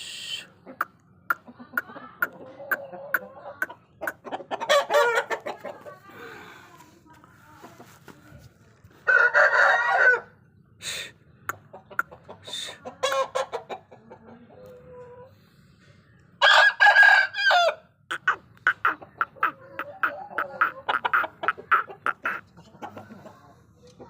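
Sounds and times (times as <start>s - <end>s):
chickens clucking: 0.0s - 17.2s, 18.0s - 24.0s
rooster crowing: 9.0s - 10.3s, 16.4s - 17.8s.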